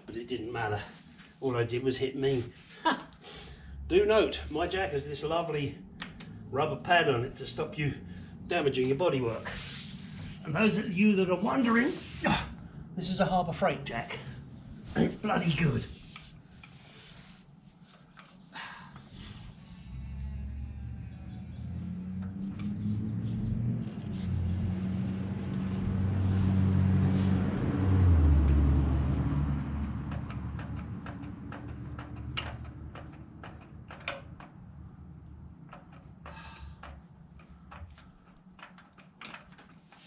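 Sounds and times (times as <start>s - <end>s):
vehicle engine rumble passing: 3.5s - 13.2s, 19.0s - 38.4s
clicks and knocks: 30.0s - 34.6s.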